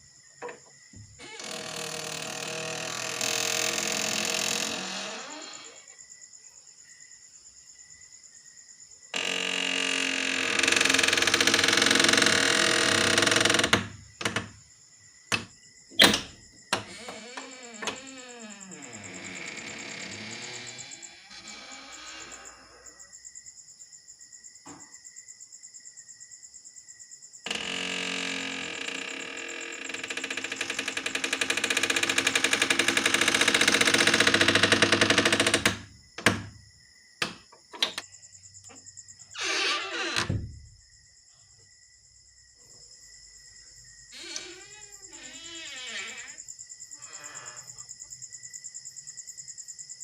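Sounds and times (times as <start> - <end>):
door hinge creaking: 0.4 - 6.0, 9.1 - 14.6, 15.3 - 22.9, 27.5 - 36.6, 37.2 - 38.1, 39.4 - 40.8, 44.1 - 46.4, 47.0 - 47.8
door latch clicks: 37.2 - 38.1.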